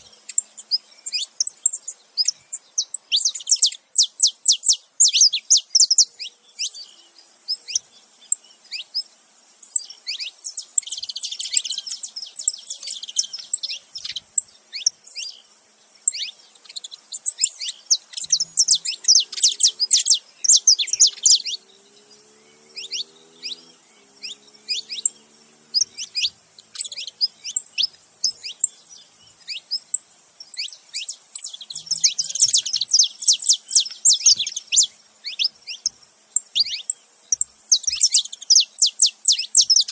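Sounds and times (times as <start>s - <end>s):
finches chirping: 0.0s - 39.9s.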